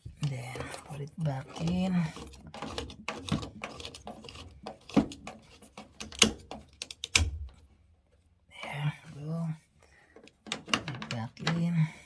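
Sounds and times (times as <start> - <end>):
plastic clicks and knocks: 0.2 - 7.6, 10.2 - 11.7.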